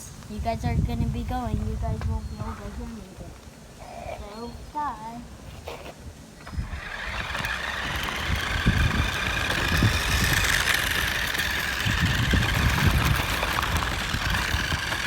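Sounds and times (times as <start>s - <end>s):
toy car motor whine: 6.4s - 15.0s
wheels rumbling on ground: 6.4s - 15.0s.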